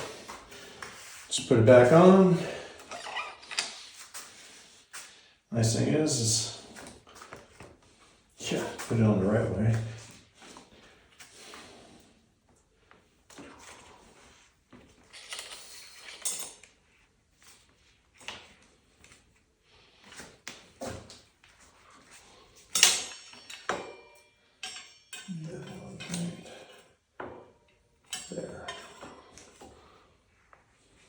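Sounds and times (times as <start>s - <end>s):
metal parts and tools clinking: 15.1s - 16.7s, 22.7s - 26.8s, 28.1s - 29.4s
ringing metallic clank: 22.8s - 26.5s.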